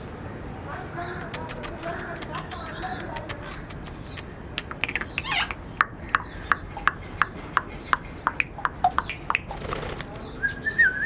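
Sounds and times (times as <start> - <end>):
parrots clicking: 1.1 - 10.2
parrot warbling call: 4.8 - 9.5.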